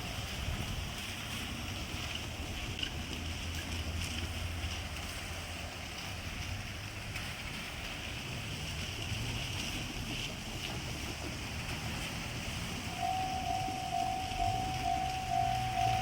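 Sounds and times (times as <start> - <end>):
wind noise on microphone: 0.0 - 4.3
diesel railcar engine rumble: 0.0 - 16.0.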